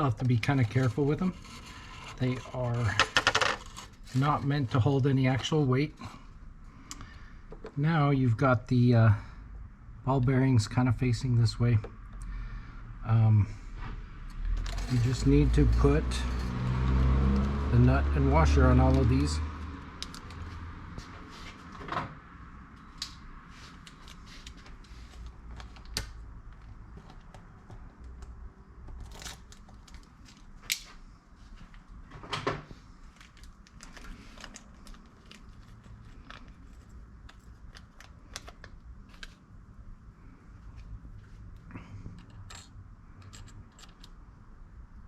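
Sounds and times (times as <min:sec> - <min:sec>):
small metal hardware clinking: 0:14.6 - 0:16.8, 0:42.2 - 0:44.2.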